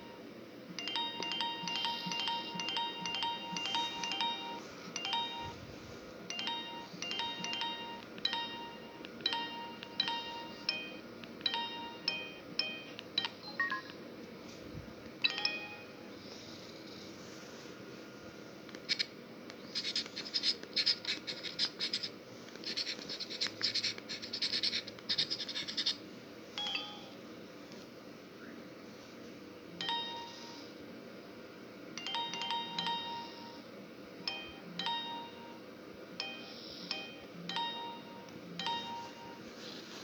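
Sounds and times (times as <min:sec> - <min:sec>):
mobile phone ringtone: 0:00.8 - 0:13.9, 0:15.2 - 0:16.3, 0:26.6 - 0:27.2, 0:29.8 - 0:30.8, 0:32.0 - 0:33.7, 0:34.3 - 0:39.8.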